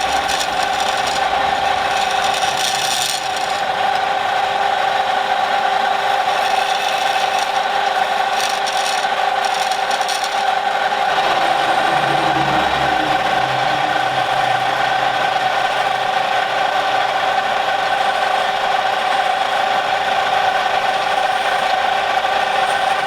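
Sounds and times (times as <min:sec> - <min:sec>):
workshop machine humming: 0:06.1 - 0:19.1.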